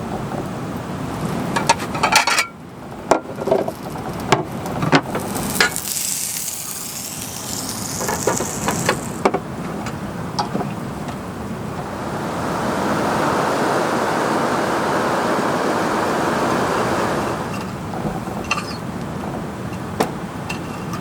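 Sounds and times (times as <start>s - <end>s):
steady rain: 4.6s - 9.2s, 11.8s - 17.6s
hiss: 5.1s - 9.2s, 12.0s - 17.7s.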